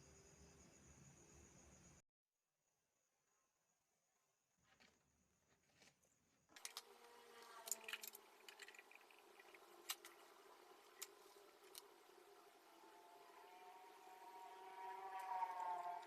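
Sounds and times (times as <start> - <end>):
small motor whining: 6.6 - 16.0.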